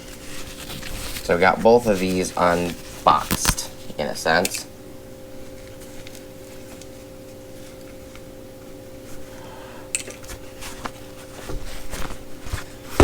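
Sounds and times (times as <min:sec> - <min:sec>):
items being handled: 0:00.0 - 0:04.7, 0:05.4 - 0:13.0
electrical hum: 0:00.0 - 0:13.0.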